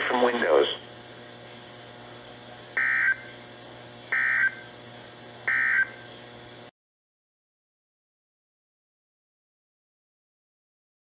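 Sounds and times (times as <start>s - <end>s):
radio hum and hiss: 0.0s - 6.7s.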